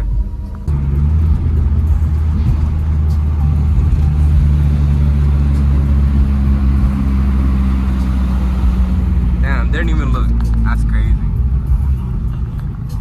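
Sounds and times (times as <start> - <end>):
car engine cruising drone: 0.0 - 13.0.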